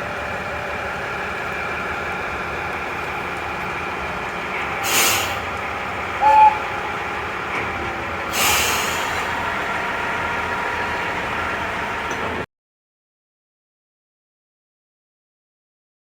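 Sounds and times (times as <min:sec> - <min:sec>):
diesel railcar idling: 0:00.0 - 0:12.5
air brake hisses: 0:04.8 - 0:05.4, 0:08.3 - 0:09.4
loud beep: 0:06.2 - 0:06.6.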